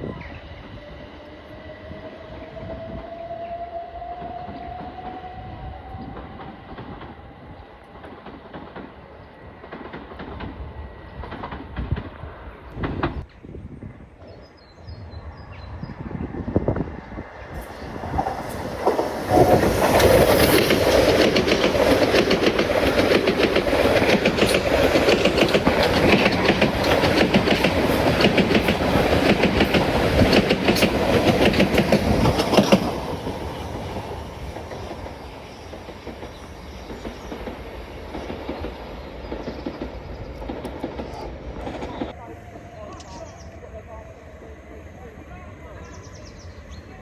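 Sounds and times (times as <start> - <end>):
train wheels clattering on track: 4.1 - 13.5, 17.4 - 42.2.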